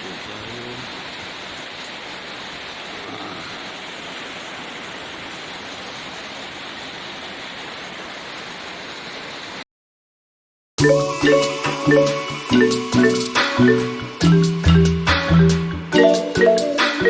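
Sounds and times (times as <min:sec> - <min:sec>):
heavy rain: 0:00.0 - 0:09.6, 0:10.8 - 0:17.0
marimba music: 0:10.8 - 0:17.0.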